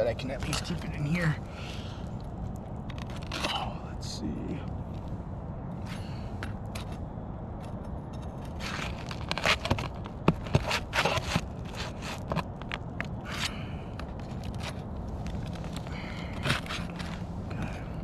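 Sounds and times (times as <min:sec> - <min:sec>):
flat bar scraping shingles: 0:08.2 - 0:17.8
shingles cracking: 0:08.4 - 0:17.8.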